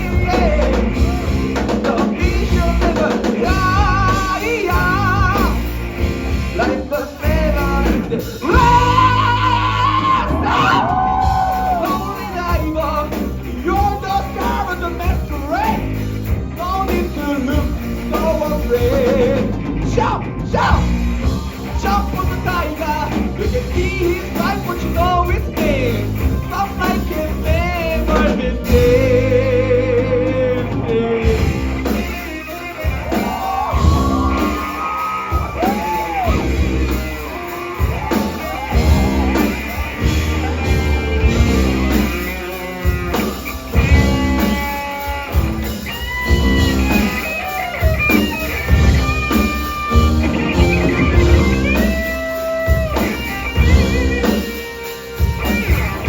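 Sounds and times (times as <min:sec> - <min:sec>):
live rock band playing: 0:00.0 - 0:56.0
electric guitar bent notes: 0:30.0 - 0:56.0.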